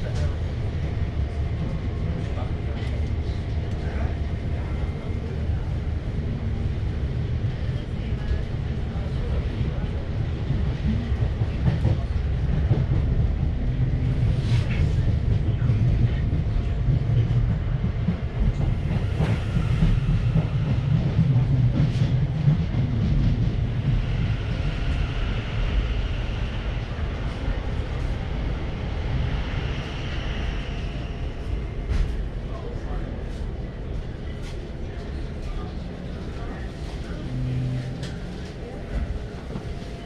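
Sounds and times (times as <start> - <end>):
train wheels rumbling on track: 0.0 - 40.0.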